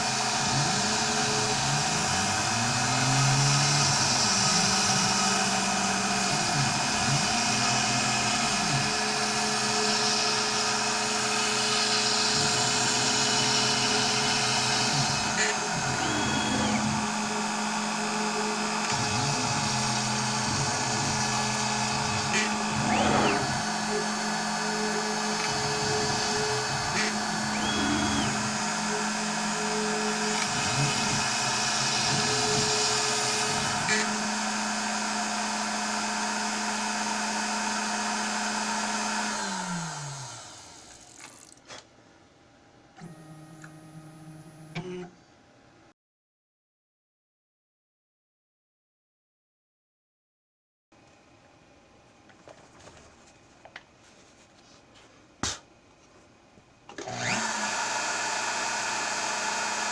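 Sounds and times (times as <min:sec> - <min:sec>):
low machine whir: 0:00.0 - 0:38.6
router spindle cutting foam: 0:00.0 - 0:41.4, 0:57.0 - 0:59.9.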